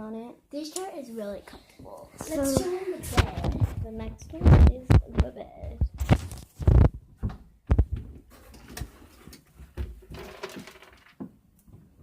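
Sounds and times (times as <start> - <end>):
soft rustling and shuffling: 1.2 - 9.8.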